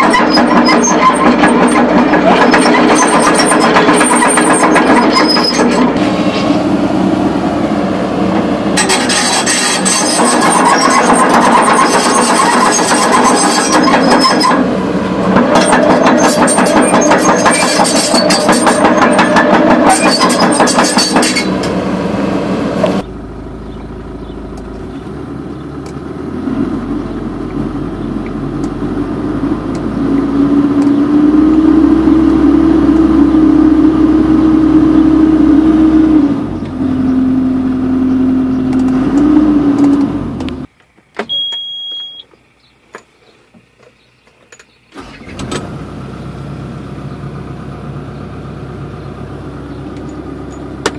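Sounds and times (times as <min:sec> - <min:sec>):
dense mechanical clatter: 0:00.0 - 0:06.6, 0:08.3 - 0:21.8
diesel engine whine: 0:00.0 - 0:42.6, 0:44.2 - 0:50.9.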